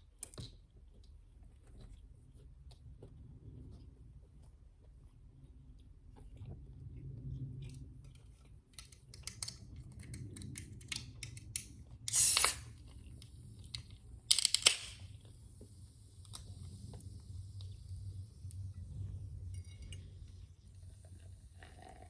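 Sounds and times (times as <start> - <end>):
chewing and mouth clicks: 0.0 - 10.6
loud hissing bursts: 12.1 - 12.7.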